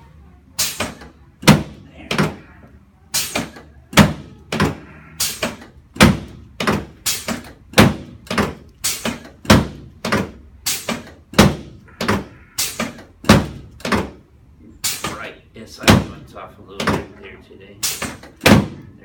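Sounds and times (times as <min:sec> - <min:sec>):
chiropractic equipment thunks: 0:00.6 - 0:02.5, 0:03.2 - 0:14.2, 0:14.8 - 0:17.2, 0:17.8 - 0:18.9.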